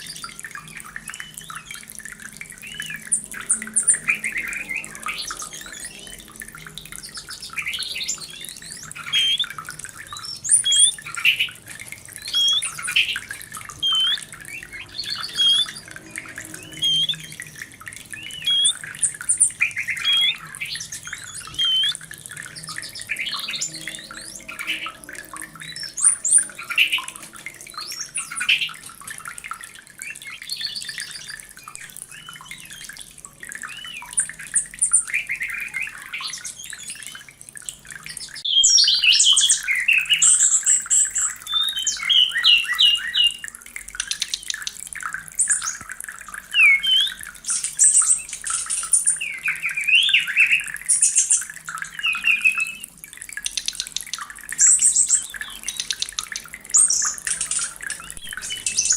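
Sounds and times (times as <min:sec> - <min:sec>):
bird singing whistles and chirps: 0:07.0 - 0:11.6, 0:12.2 - 0:28.7, 0:33.6 - 0:37.3, 0:38.2 - 0:43.4, 0:46.5 - 0:58.9.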